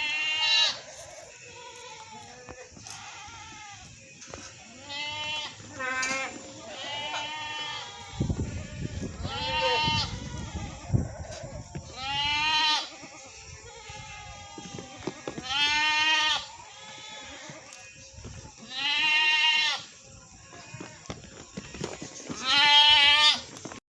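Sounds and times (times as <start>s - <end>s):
goats bleating: 0.0s - 23.6s.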